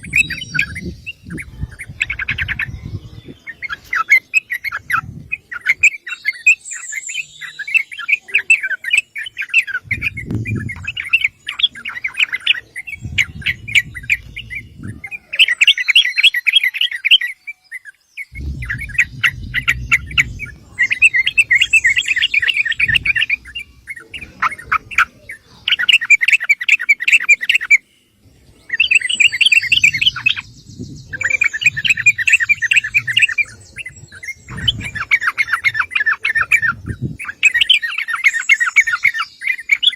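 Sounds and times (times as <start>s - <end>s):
bulbul singing: 0.0s - 39.9s
low rumble: 12.9s - 15.1s, 18.3s - 25.2s.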